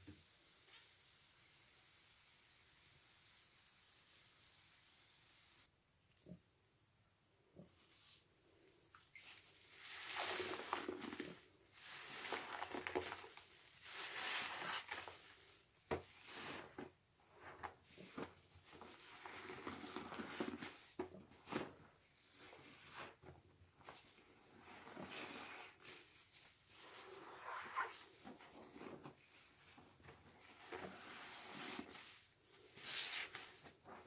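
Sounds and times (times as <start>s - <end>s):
sponge squelching: 8.9s - 15.5s, 23.8s - 34.0s.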